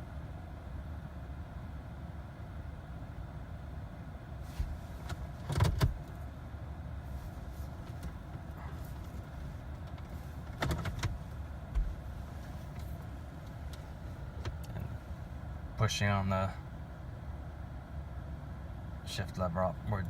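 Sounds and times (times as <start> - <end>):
low cabin hum: 0.0 - 20.0
car interior controls clicking: 4.6 - 6.1, 7.8 - 14.9.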